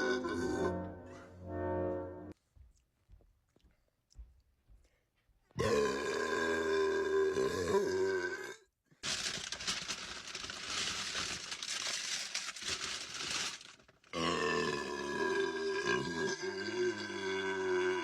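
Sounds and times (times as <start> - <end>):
long drawn-out burps: 0.0 - 1.0, 5.6 - 8.7, 14.1 - 18.0.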